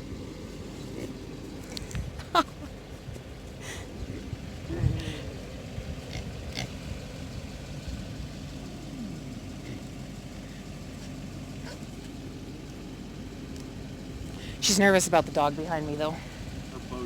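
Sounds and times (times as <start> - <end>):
vehicle engine idling: 0.0 - 17.0
animal grunting: 0.8 - 2.6, 4.1 - 7.0, 8.8 - 10.0.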